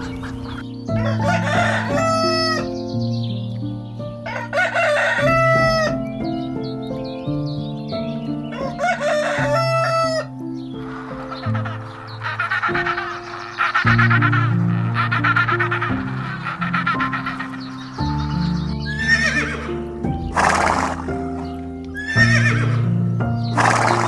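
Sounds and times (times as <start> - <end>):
rooster crowing: 0.0 - 2.6, 4.3 - 5.9, 8.8 - 13.9
background music: 0.0 - 24.0.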